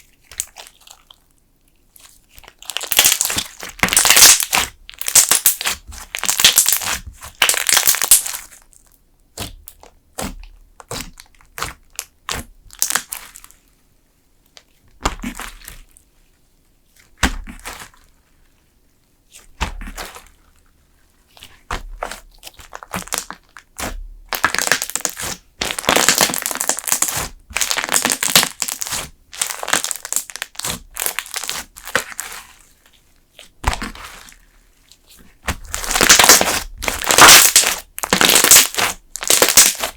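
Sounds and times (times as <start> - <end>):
slime squeezed crackling and popping: 0.2 - 1.3, 2.0 - 13.6, 21.4 - 34.4, 35.4 - 39.9.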